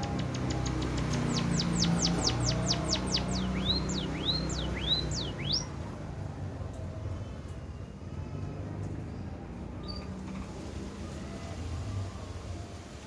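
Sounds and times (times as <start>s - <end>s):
bird singing whistled notes: 0.0s - 5.8s.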